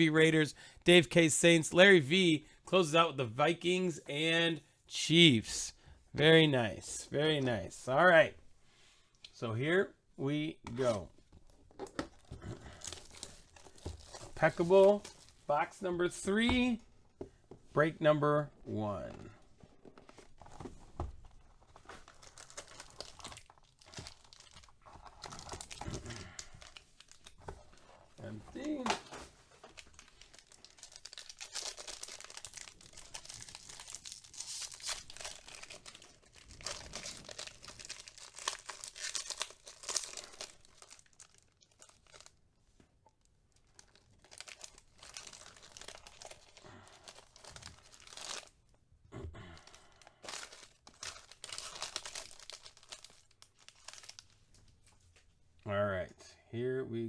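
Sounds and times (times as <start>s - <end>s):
plastic wrapping torn and crinkled: 21.8s - 27.4s, 29.6s - 42.4s, 43.5s - 48.6s, 49.6s - 54.6s.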